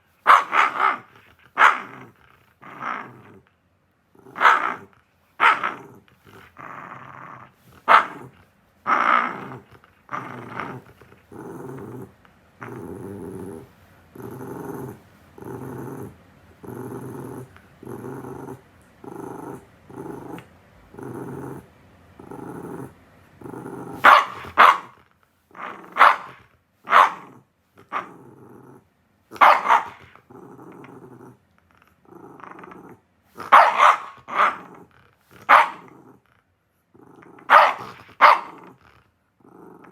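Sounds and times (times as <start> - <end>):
dog barking sharply: 0.3 - 0.8, 24.0 - 24.9, 26.0 - 27.2, 29.4 - 30.0, 33.5 - 34.6, 35.5 - 35.8, 37.5 - 38.5
dog growling: 0.3 - 3.5, 4.1 - 39.9.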